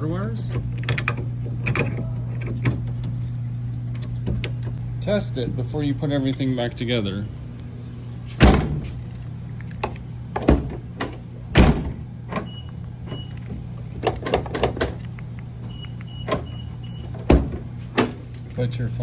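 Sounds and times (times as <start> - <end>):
low hum: 0.0 - 19.0
door latch clunks: 0.5 - 3.1, 8.4 - 9.0, 9.7 - 18.3.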